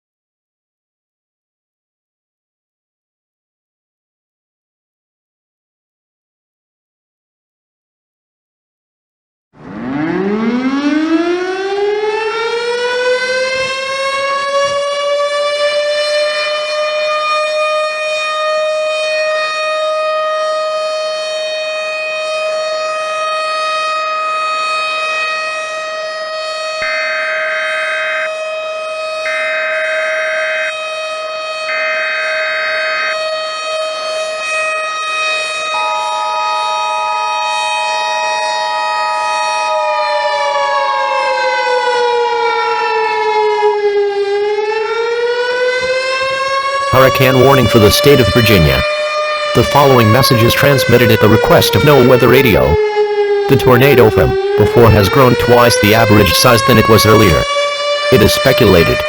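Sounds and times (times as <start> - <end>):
civil defense siren wailing: 9.6 - 59.0
two-tone attention signal: 47.0 - 48.8, 49.6 - 52.8, 53.5 - 57.4
data tone bursts: 53.5 - 57.4.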